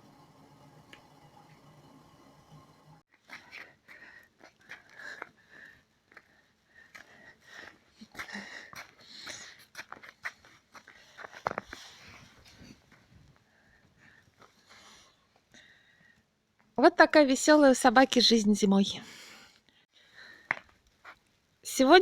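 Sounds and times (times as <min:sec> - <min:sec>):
clicks and scuffs: 0:06.9 - 0:13.1.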